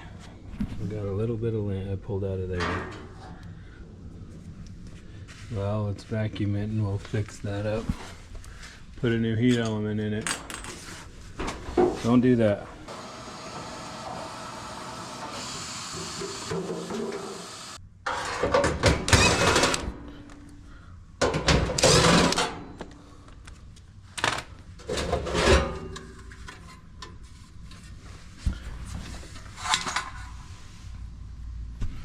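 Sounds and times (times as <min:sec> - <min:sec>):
parts clattering and rustling: 0:09.5 - 0:12.5, 0:21.2 - 0:30.6.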